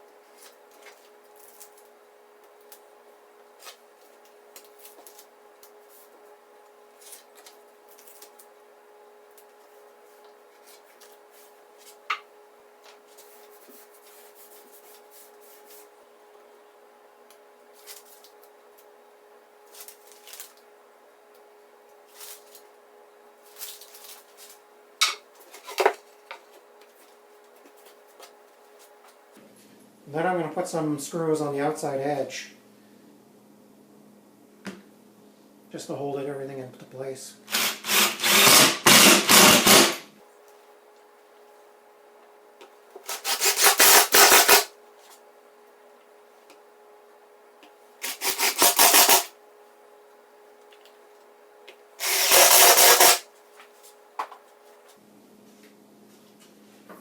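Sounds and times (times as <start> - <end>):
faint hum: 0.0 - 37.5
wooden boards being handled: 23.7 - 27.0
tape being cut and peeled: 43.0 - 44.7, 48.0 - 49.3, 52.0 - 53.3.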